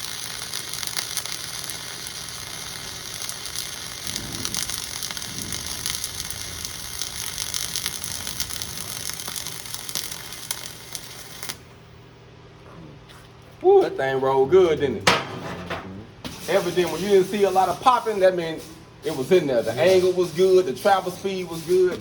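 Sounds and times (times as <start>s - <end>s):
welding arc hissing and crackling: 0.0s - 11.8s, 16.2s - 22.0s.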